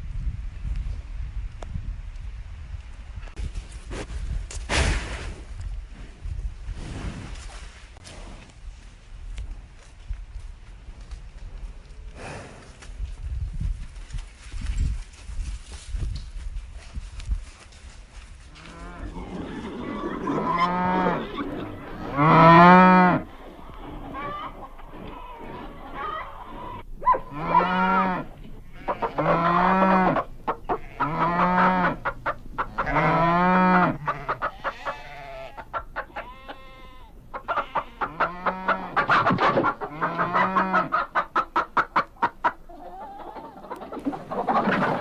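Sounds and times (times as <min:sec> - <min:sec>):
livestock calling: 0:18.6 - 0:45.0
hens clucking: 0:18.8 - 0:45.0.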